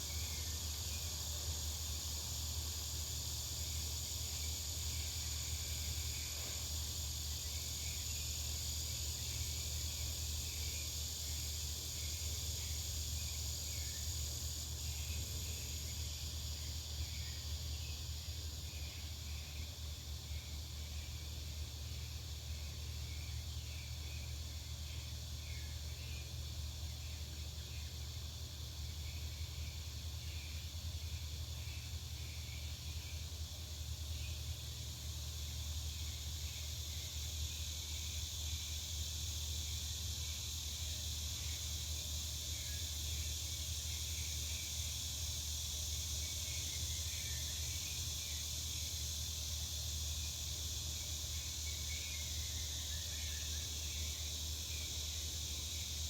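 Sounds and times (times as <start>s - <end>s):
insect chorus: 0.0s - 56.0s
short insect chirps: 0.0s - 56.0s.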